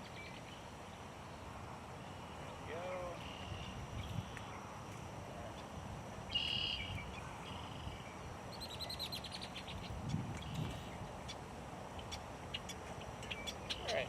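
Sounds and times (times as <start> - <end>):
birds calling: 5.5 - 14.0.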